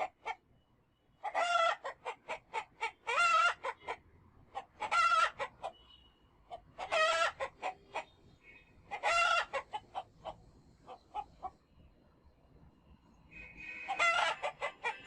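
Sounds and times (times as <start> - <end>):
chickens clucking: 0.0 - 0.4, 1.2 - 5.8, 6.5 - 8.2, 8.9 - 11.6, 13.8 - 15.0
chickens squawking: 0.0 - 0.4, 1.2 - 5.8, 6.5 - 11.6, 13.7 - 15.0.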